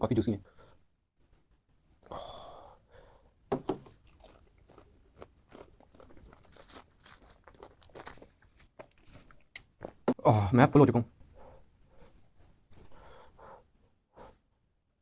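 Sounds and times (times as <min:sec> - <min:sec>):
person biting and chewing: 0:03.8 - 0:10.0.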